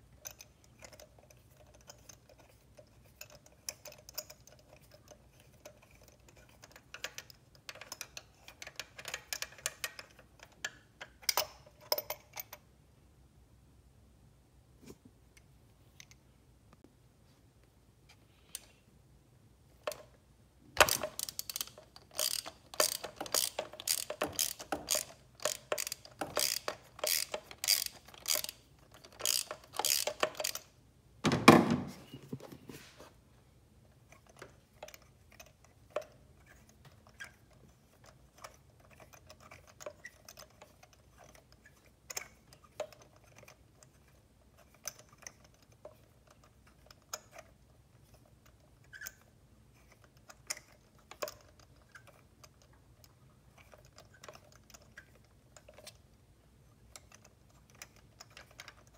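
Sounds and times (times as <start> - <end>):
ratchet wrench clicking: 20.8 - 30.7
loud clunk: 31.2 - 32.1.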